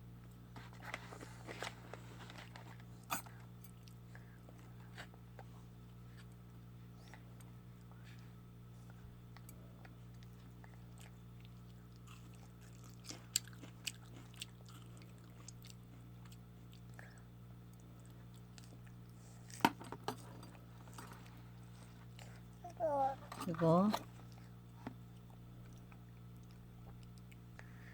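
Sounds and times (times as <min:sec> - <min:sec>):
steady low hum: 0:00.0 - 0:27.9
toddler chewing with mouth clicks: 0:08.8 - 0:19.6, 0:21.2 - 0:23.3.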